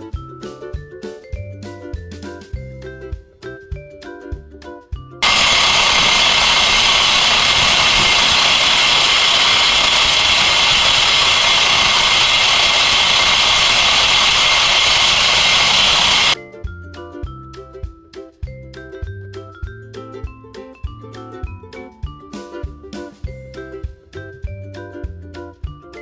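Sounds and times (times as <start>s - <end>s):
loud steady rushing noise: 5.2s - 16.4s.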